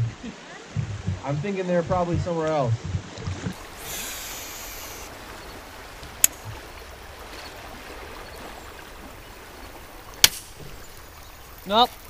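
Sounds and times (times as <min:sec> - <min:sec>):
river water rushing: 0:03.5 - 0:12.0.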